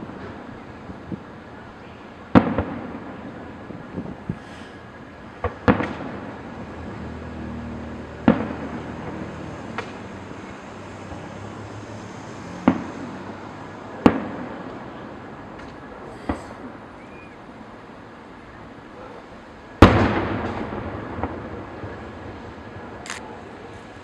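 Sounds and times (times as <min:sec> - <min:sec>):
fireworks bursting with sharp bangs: 0:00.0 - 0:07.2, 0:07.8 - 0:11.4, 0:12.3 - 0:18.7, 0:19.3 - 0:24.0.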